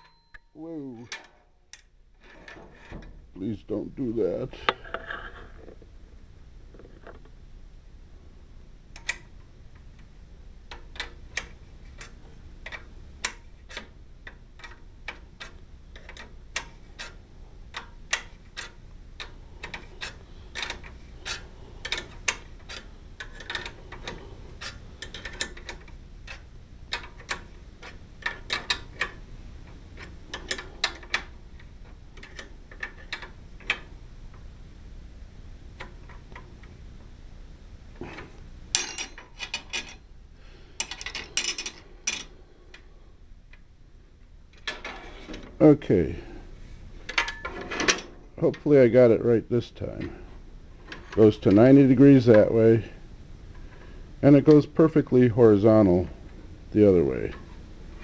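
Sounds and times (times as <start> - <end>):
hand tools clicking on metal: 10.7 - 29.2.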